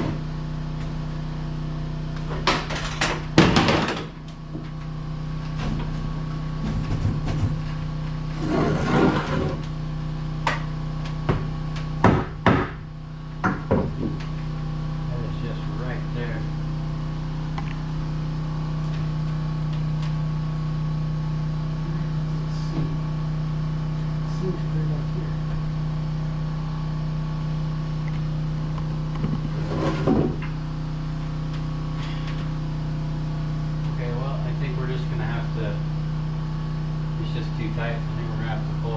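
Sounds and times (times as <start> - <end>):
motor droning: 0.0 - 38.9
steady low hum: 0.0 - 38.9
knocks on wooden wall panel: 11.3 - 12.8, 13.4 - 14.2.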